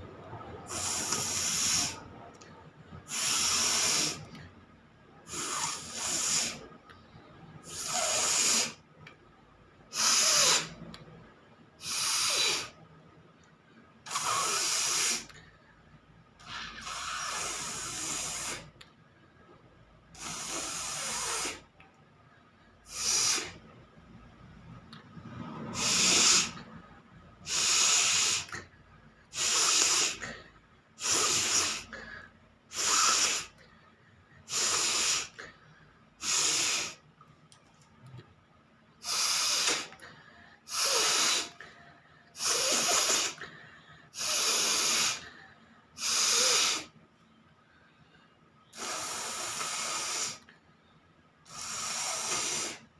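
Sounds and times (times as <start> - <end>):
person blowing air through nose: 0.7 - 2.0, 3.0 - 4.4, 5.3 - 6.7, 7.6 - 8.8, 9.9 - 10.8, 11.8 - 12.8, 14.1 - 15.3, 16.4 - 18.7, 20.2 - 21.7, 22.9 - 23.6, 25.3 - 26.7, 27.4 - 28.6, 29.3 - 30.4, 31.0 - 33.6, 34.5 - 35.5, 36.2 - 37.0, 39.0 - 40.0, 40.7 - 41.6, 42.4 - 43.4, 44.2 - 45.4, 46.0 - 47.0, 48.8 - 50.5, 51.5 - 52.9.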